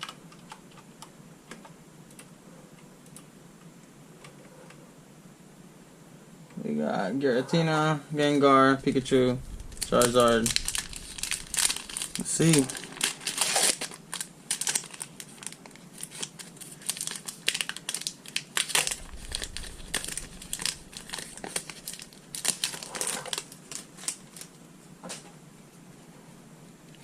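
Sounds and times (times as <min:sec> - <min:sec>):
foil wrapper crinkling and tearing: 0:09.7 - 0:24.6.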